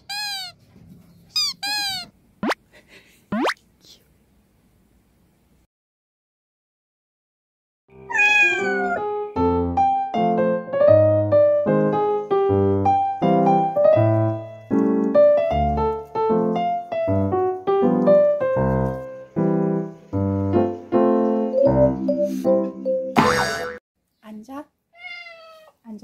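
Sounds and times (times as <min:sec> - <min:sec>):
piano music: 0:07.9 - 0:23.4.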